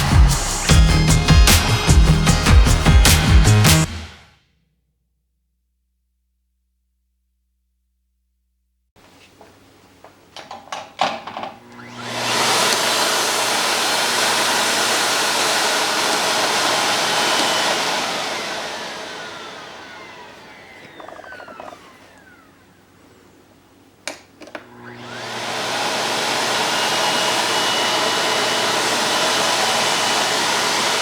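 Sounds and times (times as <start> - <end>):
vacuum cleaner running: 11.5 - 22.8, 24.4 - 31.0
vacuum motor winding down: 11.6 - 22.8, 24.5 - 31.0.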